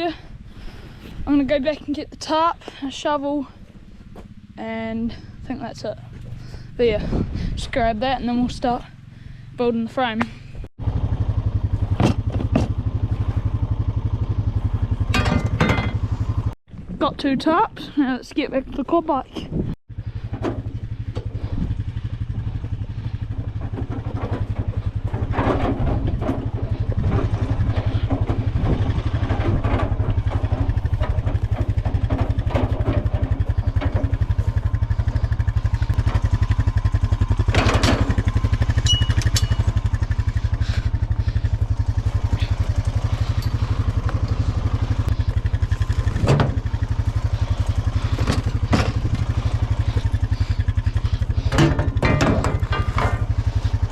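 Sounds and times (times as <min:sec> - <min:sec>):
quad bike engine running: 0:00.0 - 0:18.2, 0:19.6 - 0:53.9
knocks and rattles: 0:11.1 - 0:16.6, 0:20.0 - 0:53.9.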